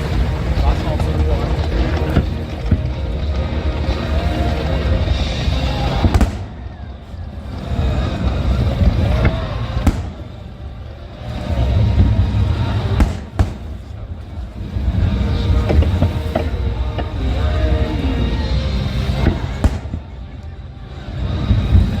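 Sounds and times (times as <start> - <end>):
firework shells bursting: 0.0 - 14.2, 19.1 - 20.2
steady low rumble: 0.0 - 22.0.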